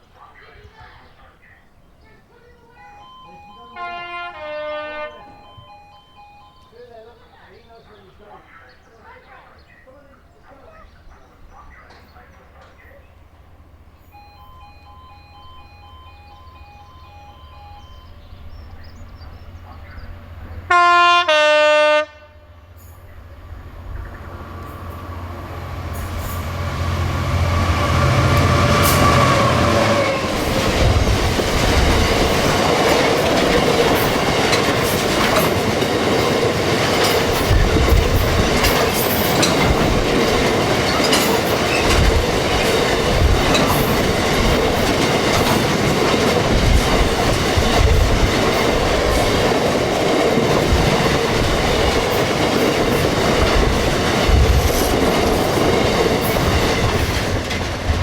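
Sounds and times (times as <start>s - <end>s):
train horn: 2.8s - 5.4s, 20.6s - 22.8s, 25.9s - 30.7s
diesel engine: 23.1s - 36.9s
train wheels clattering on rails: 24.0s - 58.0s.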